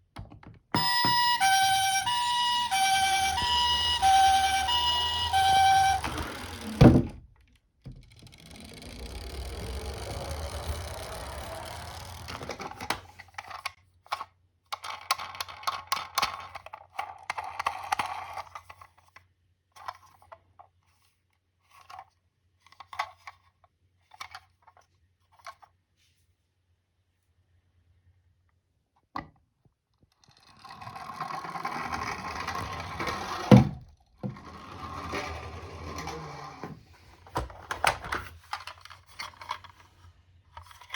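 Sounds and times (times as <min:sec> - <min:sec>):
toy cars clicking together: 0:08.2 - 0:19.2.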